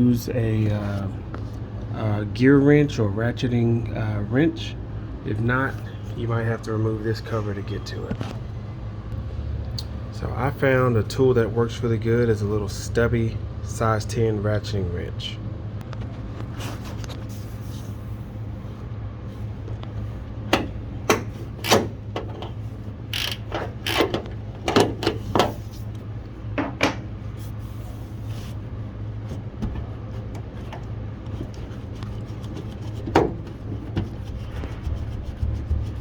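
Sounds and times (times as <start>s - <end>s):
steady low hum: 0.0s - 36.0s
ratcheting wrench clacks: 23.1s - 24.3s.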